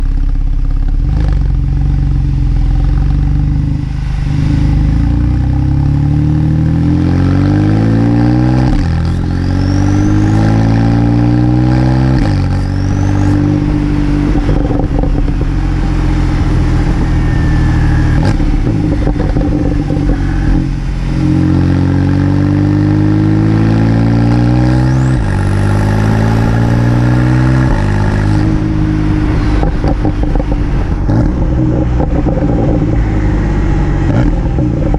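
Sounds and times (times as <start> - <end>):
sports car engine revving: 0.0 - 34.9
turbo whistle: 9.1 - 11.1, 12.2 - 13.8, 16.4 - 20.7.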